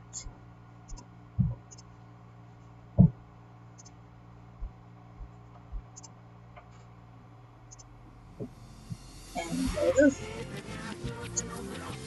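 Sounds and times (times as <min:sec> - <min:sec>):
low electrical hum: 0:00.0 - 0:12.0
dull thump: 0:03.0 - 0:03.2
computer mouse clicking: 0:05.6 - 0:06.1.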